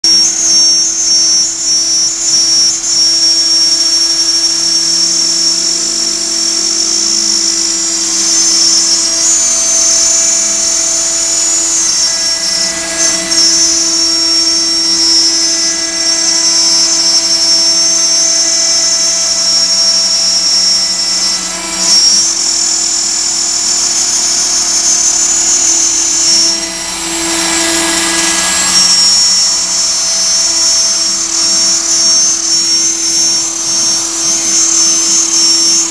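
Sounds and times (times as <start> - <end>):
cnc router spindle whine: 0.0 - 35.9.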